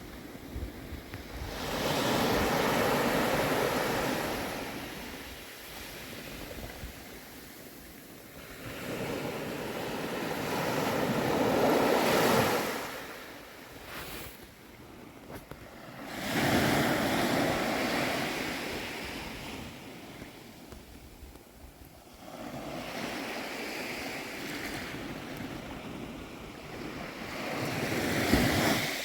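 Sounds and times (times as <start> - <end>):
small waves breaking on beach: 0.0 - 20.9, 21.9 - 29.0.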